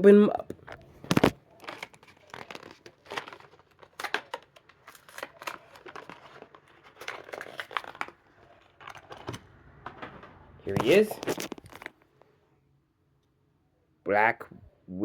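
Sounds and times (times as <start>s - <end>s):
plastic and cardboard tearing: 0.5s - 9.5s, 10.7s - 12.0s.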